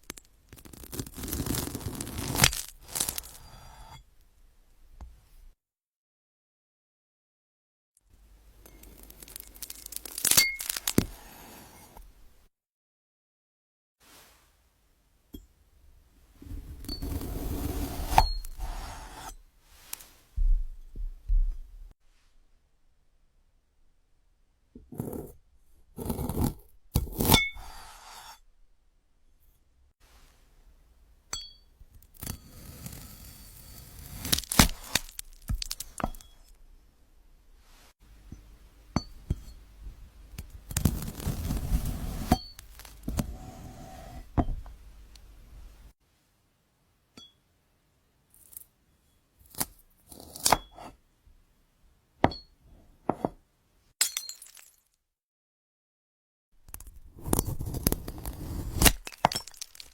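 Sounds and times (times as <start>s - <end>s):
knife cutting frozen fruit: 0.5s - 3.8s, 8.8s - 12.0s, 16.6s - 19.3s, 24.8s - 25.4s, 26.0s - 28.4s, 32.1s - 36.4s, 40.4s - 44.7s, 49.4s - 50.8s, 56.7s - 59.9s.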